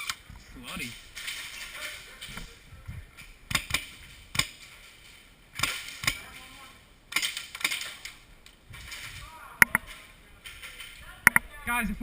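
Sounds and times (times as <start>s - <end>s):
airsoft gun shots: 3.5s - 4.6s, 5.5s - 6.3s.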